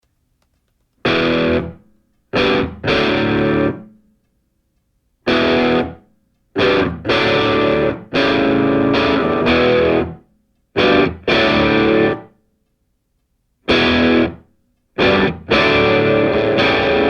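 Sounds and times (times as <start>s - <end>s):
distorted electric guitar chords: 1.0s - 1.8s, 2.4s - 4.0s, 5.3s - 6.0s, 6.6s - 10.2s, 10.8s - 12.3s, 13.7s - 17.0s.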